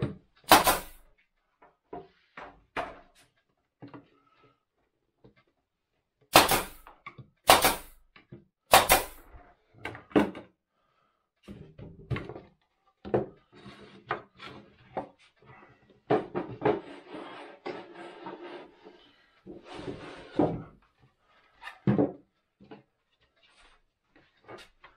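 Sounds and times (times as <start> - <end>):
staple gun shots into wood: 0.5 - 1.0, 6.3 - 6.9, 7.5 - 8.0, 8.7 - 9.2.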